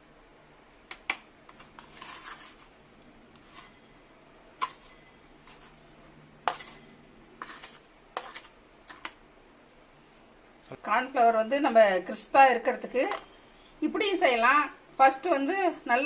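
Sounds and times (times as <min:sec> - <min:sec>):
scraping rustle: 0:01.5 - 0:02.7, 0:07.4 - 0:09.1.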